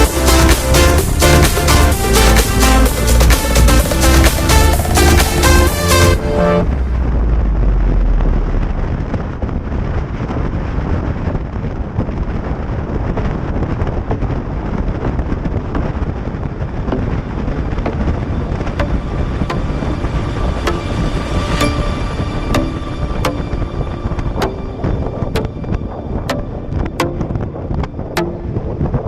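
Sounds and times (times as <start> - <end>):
music: 0.0 - 7.0, 16.9 - 29.0
road noise: 0.0 - 9.8, 14.4 - 28.8
wind buffeting microphone: 6.6 - 29.0.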